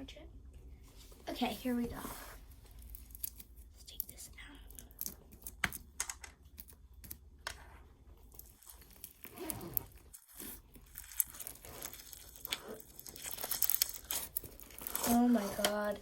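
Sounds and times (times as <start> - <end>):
crunchy slime crackling and popping: 2.7 - 7.2, 8.2 - 16.0.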